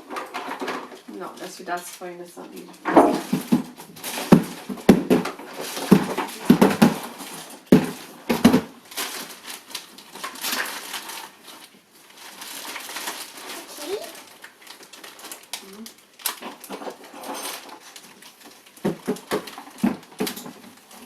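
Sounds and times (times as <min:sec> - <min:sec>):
plastic parts rustling: 0:00.0 - 0:21.0
hard plastic parts knocking: 0:02.8 - 0:08.8, 0:18.8 - 0:20.7.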